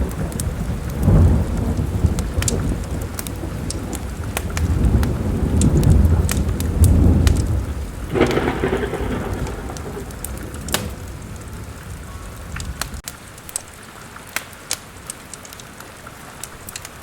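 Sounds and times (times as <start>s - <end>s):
thunder rumbling: 0.0s - 13.0s
steady rain: 0.0s - 17.0s
wood fire crackling: 0.0s - 17.0s.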